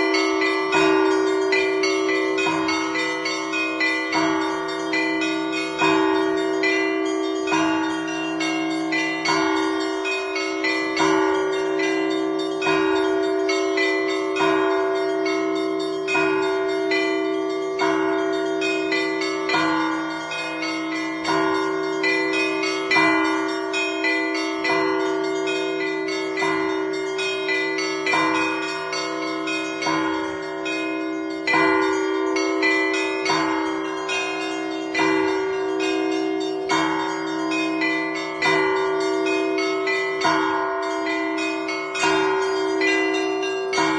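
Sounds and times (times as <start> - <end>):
low church bell strikes: 0.0 - 43.9
small bells ringing: 0.0 - 43.9.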